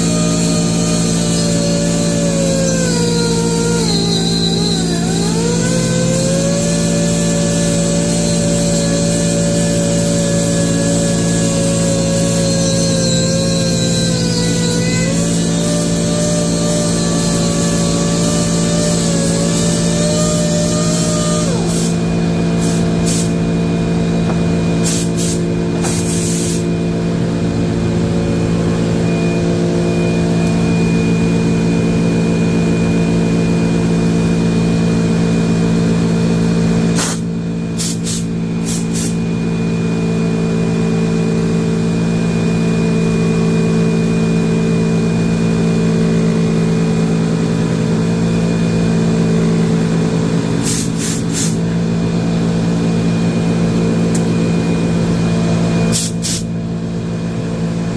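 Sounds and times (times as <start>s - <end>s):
high hissing bursts: 0.0s - 22.0s, 22.6s - 23.4s, 24.8s - 26.7s, 37.8s - 39.2s
electric motor humming: 0.0s - 27.2s.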